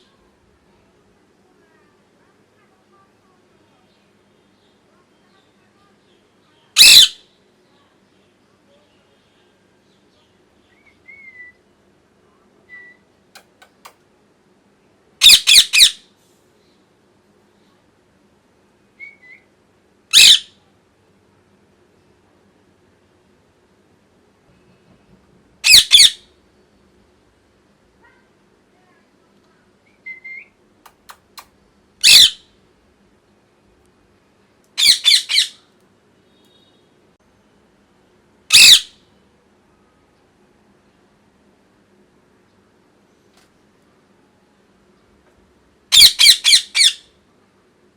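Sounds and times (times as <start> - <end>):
parrot screeching: 6.8 - 7.2, 15.2 - 16.0, 20.1 - 20.4, 25.6 - 26.2, 31.1 - 32.4, 34.8 - 35.6, 38.5 - 38.9, 45.9 - 47.0
parrot clicks: 13.4 - 14.0, 30.8 - 31.6
parrot whistling: 30.1 - 32.4.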